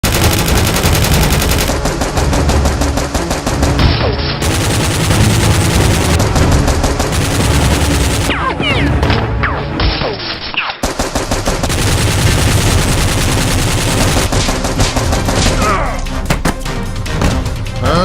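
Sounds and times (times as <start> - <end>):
machine-gun fire: 0.0 - 8.4, 10.8 - 15.7.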